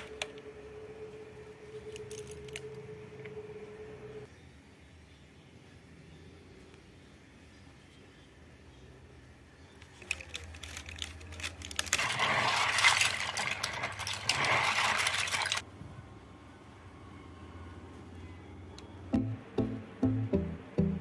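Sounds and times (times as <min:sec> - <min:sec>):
plastic keyboard parts clattering: 0:09.9 - 0:15.6.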